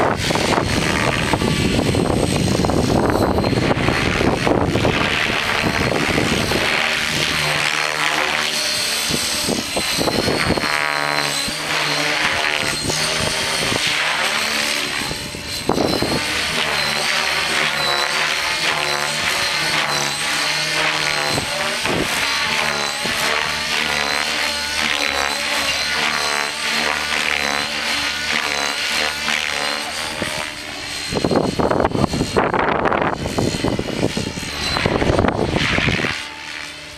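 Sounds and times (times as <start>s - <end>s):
wind buffeting the microphone: 0.0s - 7.5s, 8.9s - 14.0s, 14.6s - 17.3s, 21.1s - 24.0s, 30.0s - 36.2s
helicopter rotor blades: 0.0s - 36.9s
high motor whine: 0.0s - 36.9s.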